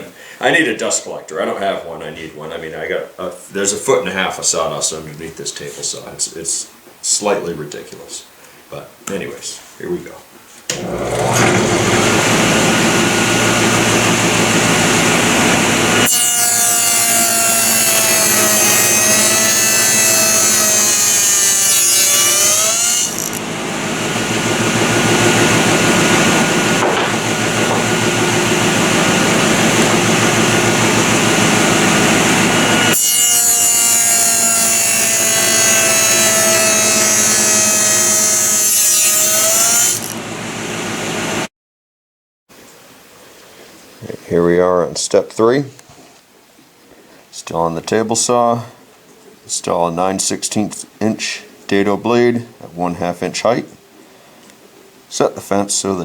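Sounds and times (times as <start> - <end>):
table saw cutting wood: 10.7 - 41.5.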